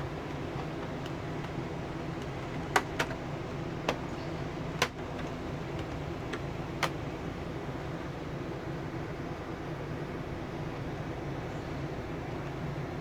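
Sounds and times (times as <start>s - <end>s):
air conditioner humming: 0.0s - 13.0s
plastic vent cover clicks: 0.2s - 7.0s.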